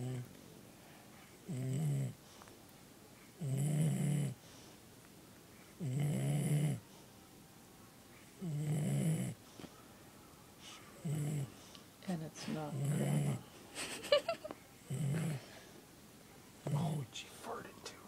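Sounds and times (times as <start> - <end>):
pet snoring: 0.0 - 0.3, 1.5 - 2.2, 3.4 - 4.4, 5.8 - 6.9, 8.4 - 9.4, 11.0 - 11.6, 12.5 - 13.4, 14.8 - 15.6, 16.6 - 17.1.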